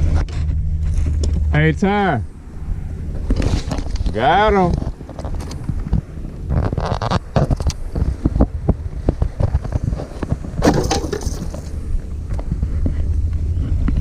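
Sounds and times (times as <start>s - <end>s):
low rumble: 7.8s - 14.0s.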